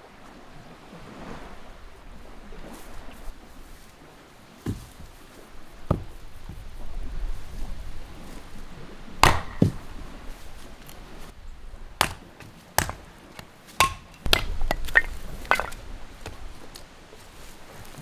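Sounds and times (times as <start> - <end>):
sharp knocks and clacks: 12.0 - 15.8.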